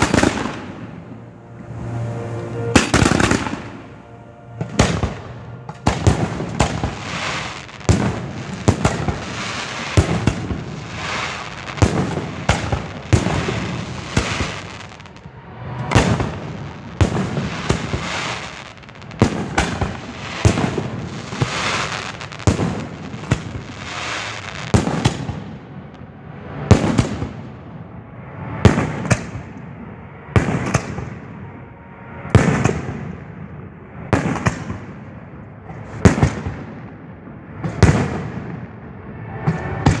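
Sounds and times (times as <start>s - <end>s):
fireworks crackling: 0.0s - 27.6s, 37.5s - 40.0s
fireworks booming: 0.0s - 27.8s, 28.6s - 31.6s, 32.4s - 40.0s.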